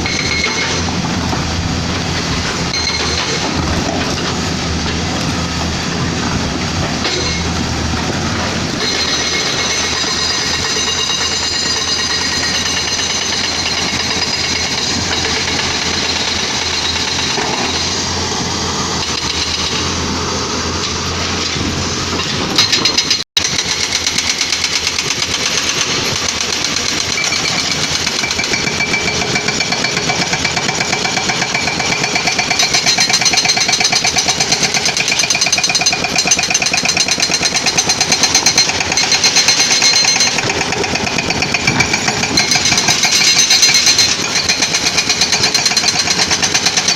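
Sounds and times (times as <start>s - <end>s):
excavator diesel engine running: 0.0s - 46.9s
hydraulic breaker hammering: 21.4s - 46.9s.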